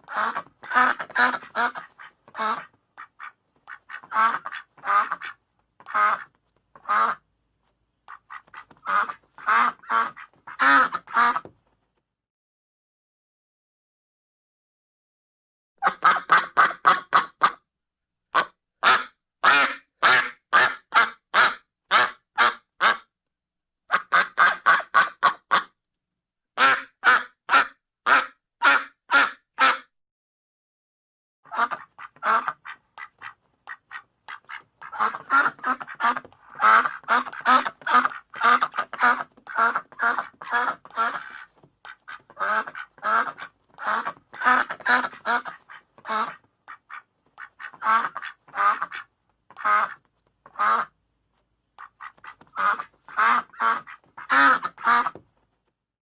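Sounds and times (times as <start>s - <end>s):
ducks quacking: 0.0s - 7.2s, 8.1s - 11.5s, 31.5s - 50.9s, 51.8s - 55.2s.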